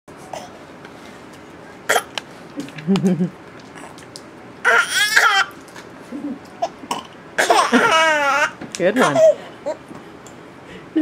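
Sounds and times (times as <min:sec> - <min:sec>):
baby squealing laugh: 0:07.4 - 0:09.8.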